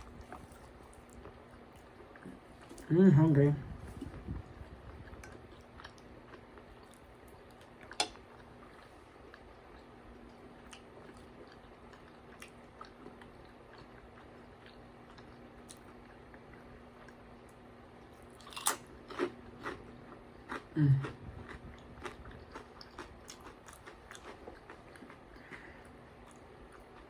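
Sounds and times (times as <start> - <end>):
person crunching food: 18.2 - 27.0
person humming low: 20.8 - 21.3.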